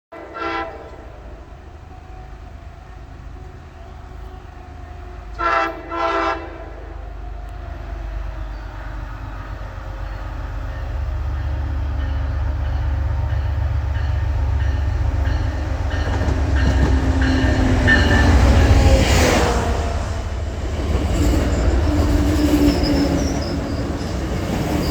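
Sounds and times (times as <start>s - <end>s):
train horn blasts: 0.1s - 2.1s, 2.8s - 7.2s
locomotive rumble and wheel noise: 0.2s - 24.9s.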